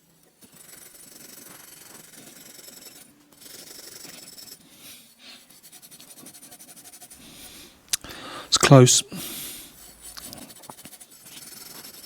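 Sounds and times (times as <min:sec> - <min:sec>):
abrasive rasping on copper pipe: 0:09.2 - 0:12.0.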